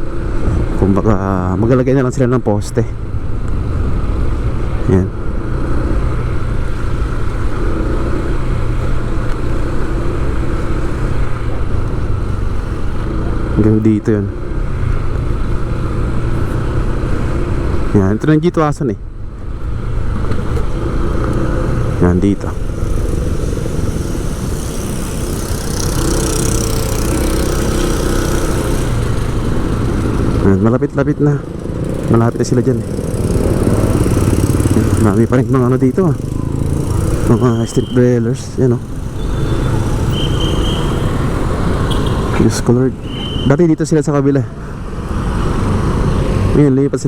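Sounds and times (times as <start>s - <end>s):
vehicle engine and road noise: 0.0s - 47.0s
small engine running: 22.5s - 30.6s, 31.4s - 42.3s.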